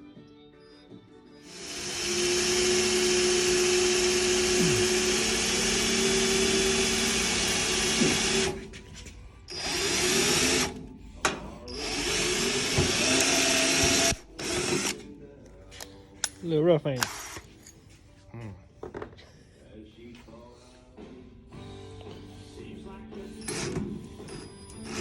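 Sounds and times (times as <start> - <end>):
power tool running: 1.4 - 8.6, 9.5 - 10.8, 11.7 - 15.0, 24.8 - 25.0.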